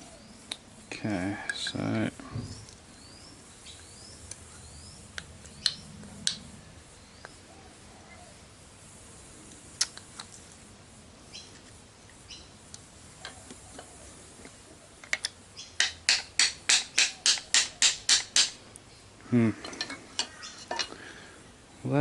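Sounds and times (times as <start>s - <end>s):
man grunting: 19.3s - 19.6s.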